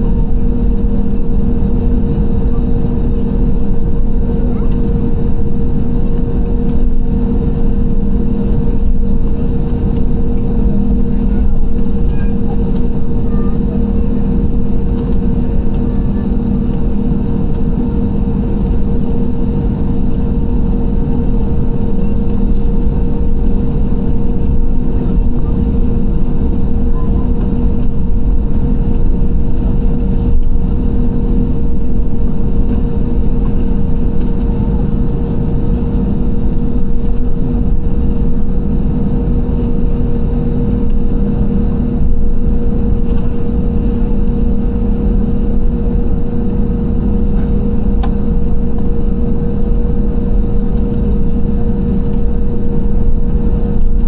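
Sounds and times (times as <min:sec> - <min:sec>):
airliner engines in cabin: 0:00.0 - 0:54.0.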